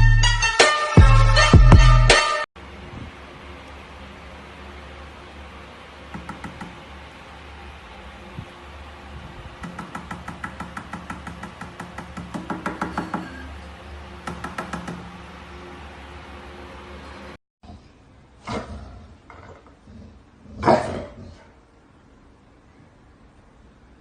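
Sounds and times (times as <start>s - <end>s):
steady low hum: 2.6s - 24.0s
rapid light taps: 6.1s - 6.9s, 9.6s - 13.1s.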